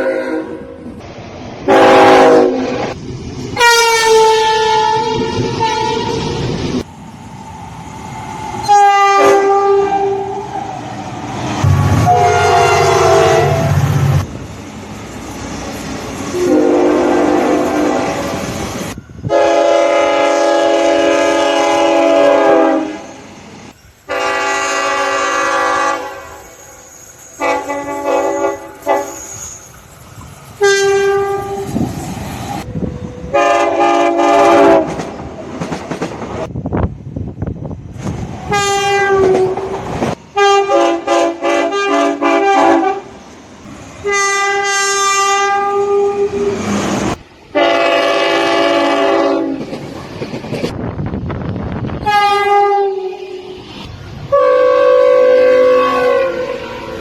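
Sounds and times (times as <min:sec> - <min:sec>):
train horn blasts: 0:00.0 - 0:00.8, 0:01.7 - 0:03.0, 0:03.6 - 0:06.4, 0:08.6 - 0:10.5, 0:11.6 - 0:14.0, 0:16.3 - 0:18.4, 0:19.3 - 0:23.2, 0:24.1 - 0:26.6, 0:27.4 - 0:29.4, 0:30.6 - 0:31.8, 0:32.7 - 0:35.1, 0:38.5 - 0:39.8, 0:40.4 - 0:43.1, 0:44.0 - 0:46.6, 0:47.5 - 0:49.6, 0:52.0 - 0:53.4, 0:54.3 - 0:57.0.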